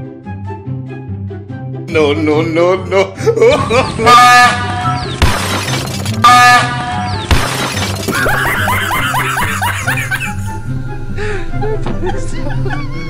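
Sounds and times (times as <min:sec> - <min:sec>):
train horn blast: 0:04.0 - 0:05.1, 0:06.2 - 0:07.2.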